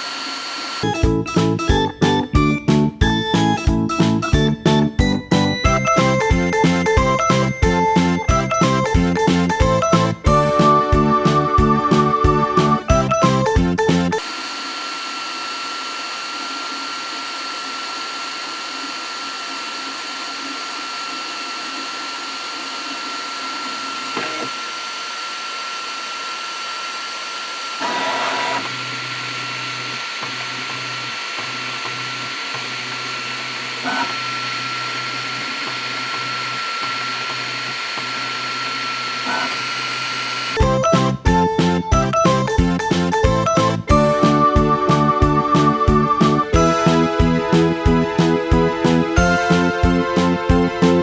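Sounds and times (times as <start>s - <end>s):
brief printer sounds: 23.8s - 24.7s.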